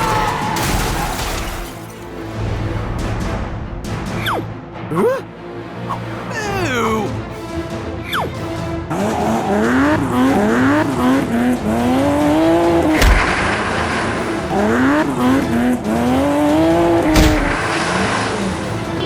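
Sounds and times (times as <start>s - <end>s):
car engine accelerating: 8.9s - 19.0s.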